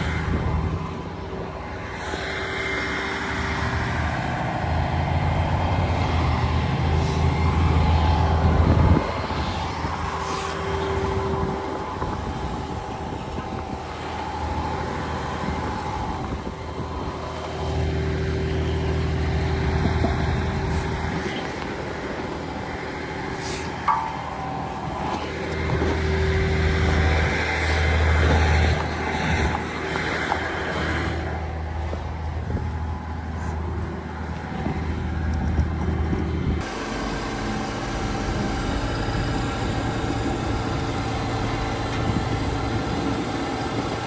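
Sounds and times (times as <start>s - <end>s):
vehicle engine running: 0.0s - 44.0s.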